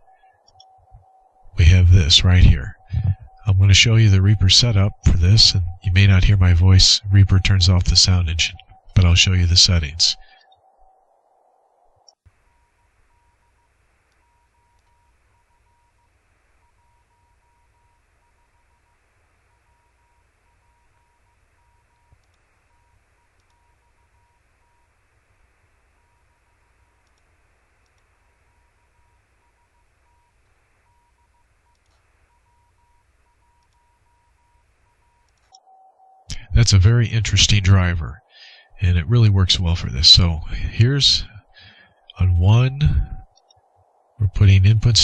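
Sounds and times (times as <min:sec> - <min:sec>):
morse code tone: 0:00.0 - 0:10.4, 0:40.8 - 0:43.3
low hiss and hum: 0:00.0 - 0:45.0.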